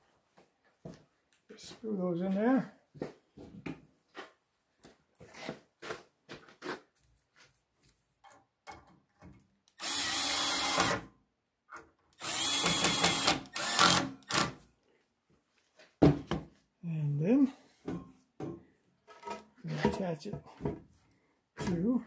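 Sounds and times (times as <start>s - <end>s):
power drill driving screws into wood: 9.7s - 11.1s, 12.1s - 14.6s.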